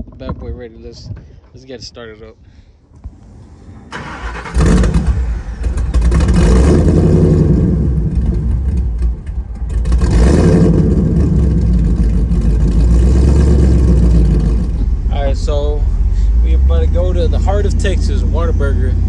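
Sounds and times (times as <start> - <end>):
car engine starting and revving: 3.2 - 19.0
car engine idling: 3.9 - 19.0.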